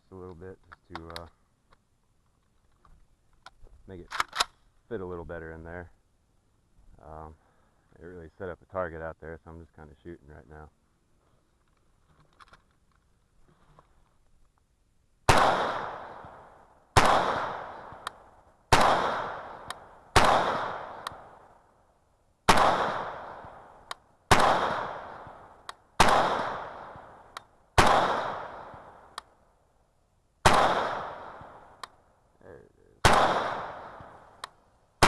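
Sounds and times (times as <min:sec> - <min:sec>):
sharp clicks: 0:00.3 - 0:04.6, 0:21.0 - 0:21.2, 0:27.3 - 0:27.5, 0:28.7 - 0:29.3, 0:31.4 - 0:32.0, 0:33.9 - 0:34.6
rifle shots echoing: 0:15.3 - 0:21.6, 0:22.4 - 0:29.2, 0:30.4 - 0:31.9, 0:33.0 - 0:34.5.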